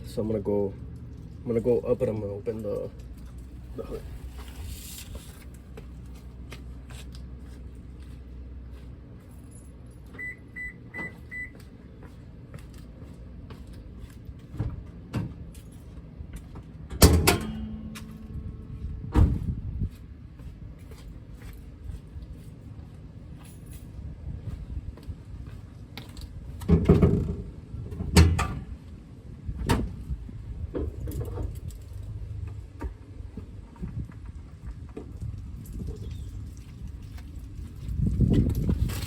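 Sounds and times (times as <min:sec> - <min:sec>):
car chime beeps: 0:10.2 - 0:11.6.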